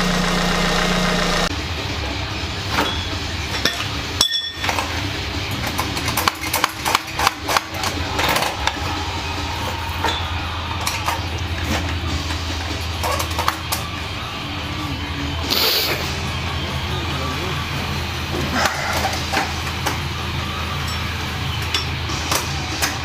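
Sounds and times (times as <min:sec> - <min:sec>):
car engine idling: 0:00.0 - 0:02.6.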